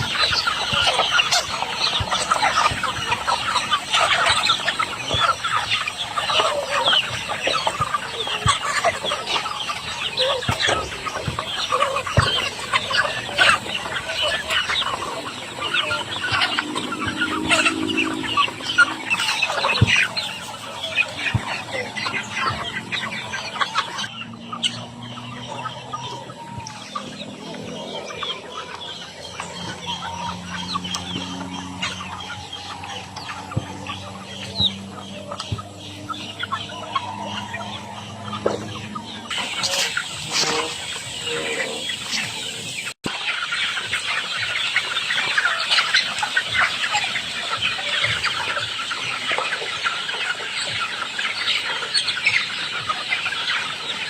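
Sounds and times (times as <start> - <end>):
chickens clucking: 0.0 - 54.0
low steady drone: 15.1 - 20.2.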